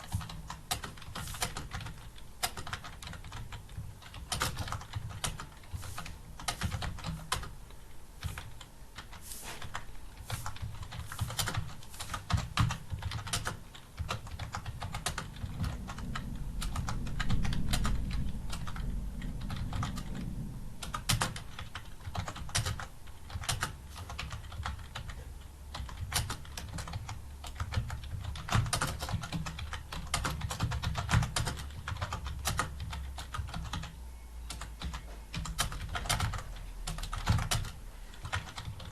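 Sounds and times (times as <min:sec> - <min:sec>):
computer keyboard typing: 0:00.0 - 0:38.9
low rumble: 0:14.1 - 0:23.3.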